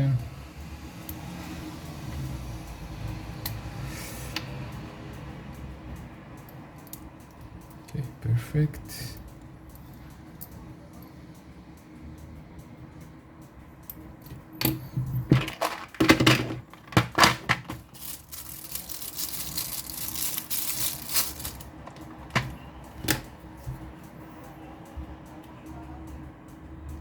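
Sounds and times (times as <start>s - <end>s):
plastic parts clicking: 14.6s - 23.3s.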